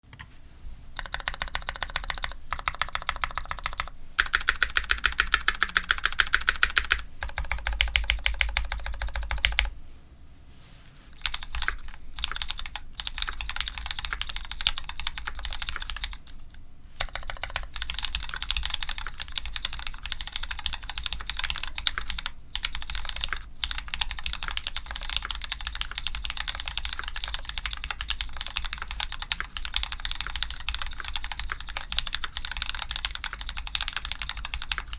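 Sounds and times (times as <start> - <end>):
mechanical keyboard typing: 1.0 - 9.7, 11.2 - 34.9.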